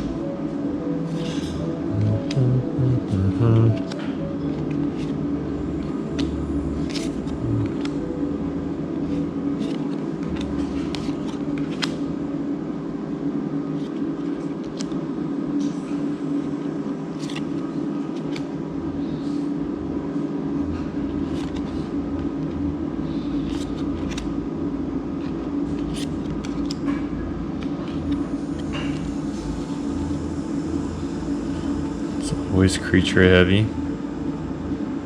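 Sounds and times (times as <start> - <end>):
steady background hum: 0.0 - 35.0
cards rustling and clicking: 1.2 - 5.2, 5.8 - 8.0, 9.1 - 12.0, 13.8 - 15.0, 17.2 - 18.5, 21.1 - 22.6, 23.4 - 24.4, 25.2 - 26.9.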